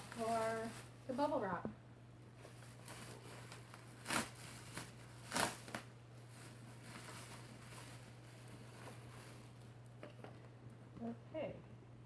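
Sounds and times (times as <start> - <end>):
bubble wrap crackles: 0.0 - 1.4, 2.4 - 9.9
bubble wrap rustling: 0.0 - 1.5, 2.3 - 9.9.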